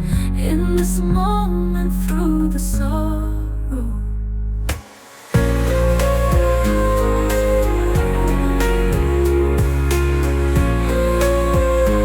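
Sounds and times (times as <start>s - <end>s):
background music with sustained chords: 5.2s - 12.0s.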